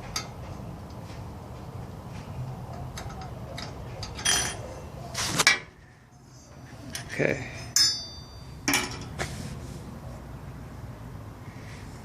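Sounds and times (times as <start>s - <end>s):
hand tools clicking and clinking: 2.7s - 4.6s.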